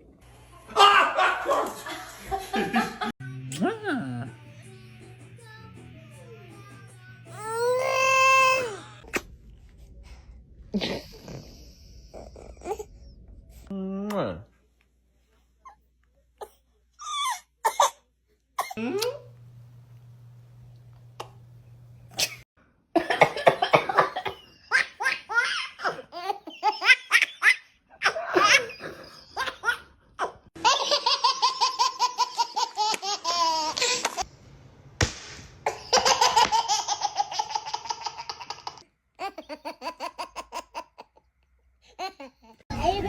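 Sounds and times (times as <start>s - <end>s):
babies giggling: 23.2s - 34.2s.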